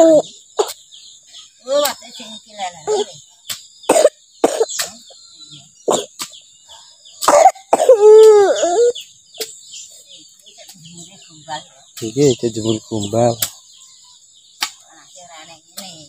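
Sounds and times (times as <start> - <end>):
child coughing: 3.9 - 4.8, 5.9 - 6.1, 7.2 - 8.9.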